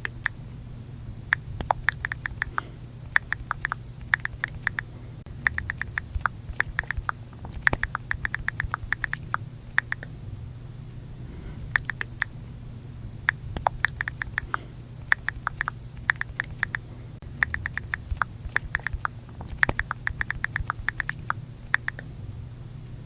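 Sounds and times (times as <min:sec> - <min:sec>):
phone keyboard clicks: 0:01.6 - 0:02.6, 0:03.2 - 0:04.8, 0:05.4 - 0:10.1, 0:11.8 - 0:12.3, 0:13.6 - 0:16.8, 0:17.4 - 0:22.0.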